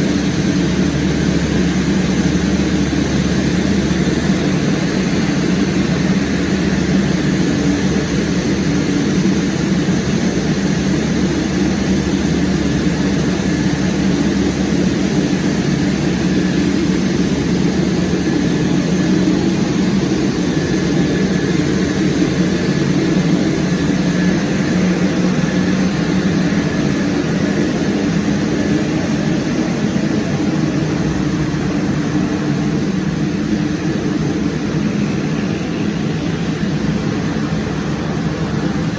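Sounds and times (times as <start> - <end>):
aircraft droning in flight: 0.0 - 38.9.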